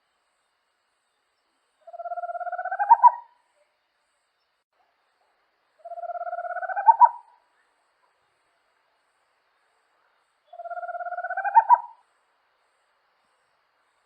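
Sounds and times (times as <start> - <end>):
owl trilling: 1.9 - 3.3, 5.8 - 7.4, 10.5 - 12.0.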